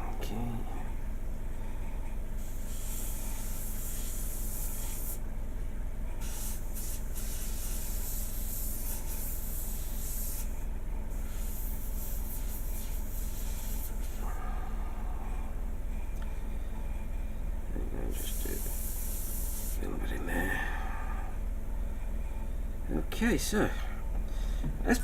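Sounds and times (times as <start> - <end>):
steady low hum: 0.0 - 25.0
airbrush spraying hiss: 2.4 - 5.2, 6.2 - 15.4, 18.2 - 20.5.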